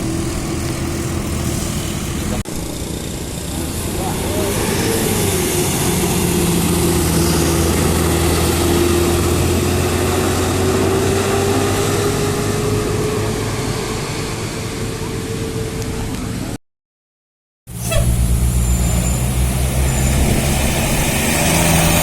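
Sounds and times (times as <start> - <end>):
bus engine hum: 0.0 - 16.6, 17.7 - 22.0
rising engine whine: 0.0 - 16.6
road and air noise: 0.0 - 16.6, 17.7 - 22.0.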